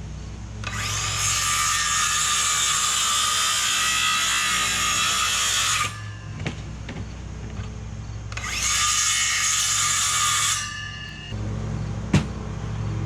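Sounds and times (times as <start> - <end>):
low engine hum: 11.3 - 13.0.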